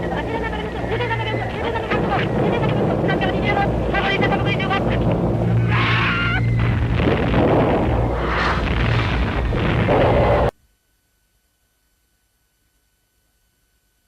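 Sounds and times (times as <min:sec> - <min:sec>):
explosions rumbling: 0:00.0 - 0:10.5
steady low drone: 0:00.0 - 0:10.5.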